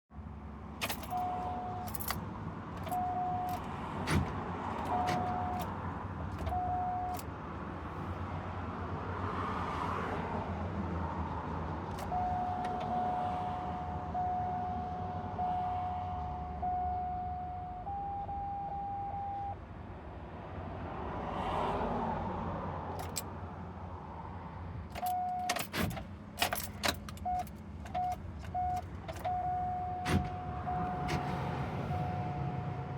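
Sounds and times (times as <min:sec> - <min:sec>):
keys jangling: 0:00.8 - 0:02.2, 0:23.0 - 0:23.2, 0:24.9 - 0:29.3
van warning chime beeping: 0:00.8 - 0:02.2, 0:02.8 - 0:07.3, 0:12.0 - 0:19.6, 0:25.0 - 0:32.9.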